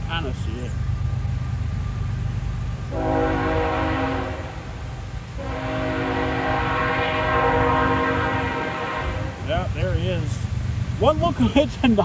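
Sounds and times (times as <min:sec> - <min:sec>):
locomotive air horn blasts: 0:02.9 - 0:09.6.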